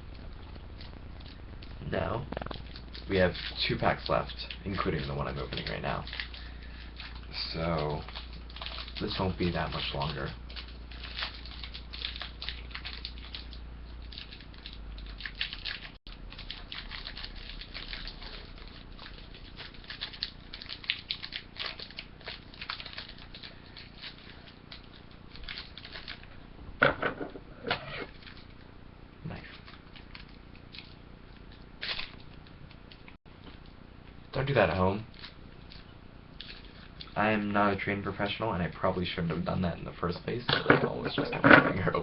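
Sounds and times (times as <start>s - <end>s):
foil wrapper crinkling and tearing: 0.0s - 26.3s, 29.3s - 33.1s.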